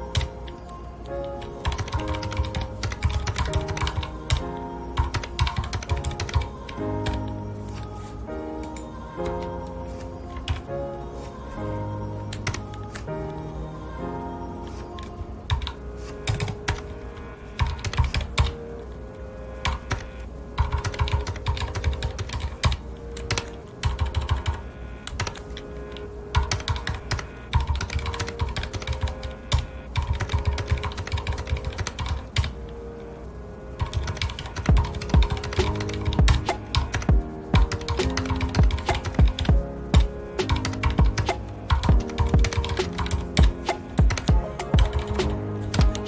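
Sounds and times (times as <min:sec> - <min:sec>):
soft background music: 0:00.0 - 0:46.0
mechanical keyboard typing: 0:01.6 - 0:04.4, 0:05.0 - 0:07.2, 0:17.6 - 0:18.5, 0:19.6 - 0:25.4, 0:26.4 - 0:32.5, 0:33.8 - 0:46.0.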